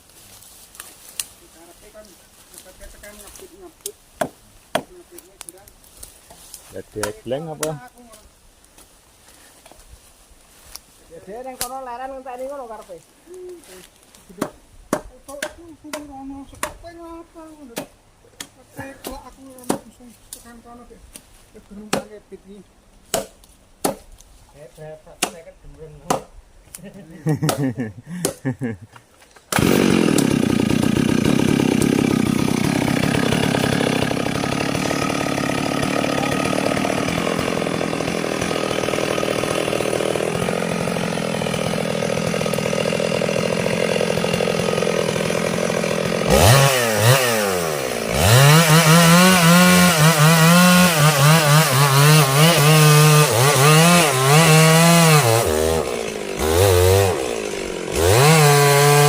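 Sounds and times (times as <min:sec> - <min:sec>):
chainsaw cutting wood: 0:00.7 - 0:07.8, 0:27.3 - 0:28.4, 0:29.5 - 0:59.0.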